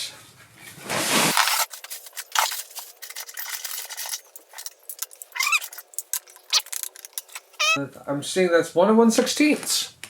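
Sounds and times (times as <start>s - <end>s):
metal tools clinking and rattling: 1.4s - 7.8s.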